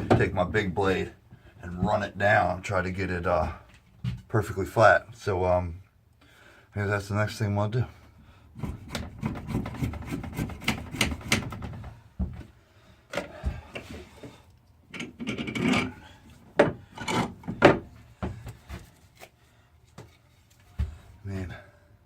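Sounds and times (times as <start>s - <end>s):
blade scraping wood: 8.6s - 11.5s.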